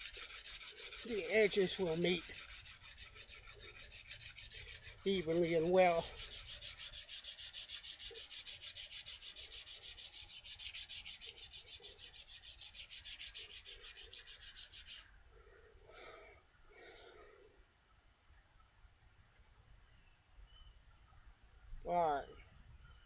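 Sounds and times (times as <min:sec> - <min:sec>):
steel blade rubbing on sandpaper: 0:00.0 - 0:15.1.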